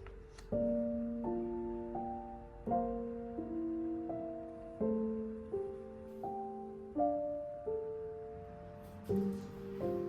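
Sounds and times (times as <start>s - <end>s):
soft piano chords: 0.0s - 10.0s.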